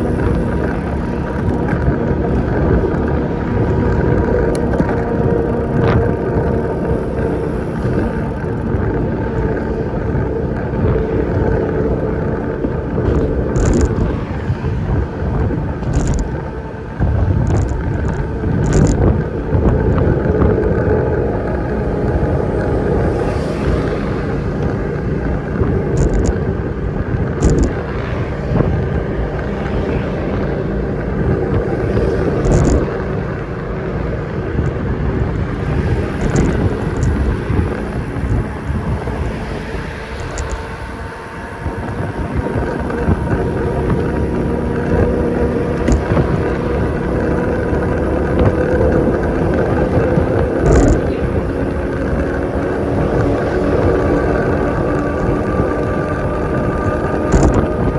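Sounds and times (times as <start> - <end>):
vehicle running on road: 0.0 - 57.9
wind buffeting microphone: 0.0 - 57.9.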